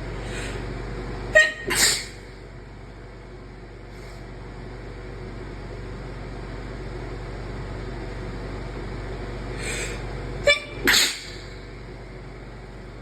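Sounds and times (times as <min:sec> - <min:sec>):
steady low hum: 0:00.0 - 0:13.0
person sneezing: 0:01.4 - 0:02.3, 0:09.6 - 0:11.6.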